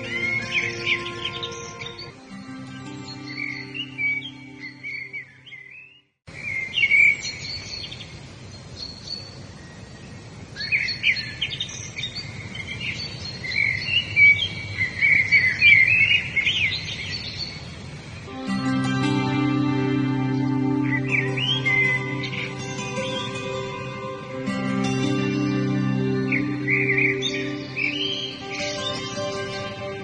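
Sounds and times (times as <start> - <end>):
soft instrumental music: 0.0 - 5.8, 18.3 - 30.0
songbirds chirping and trilling: 0.0 - 30.0.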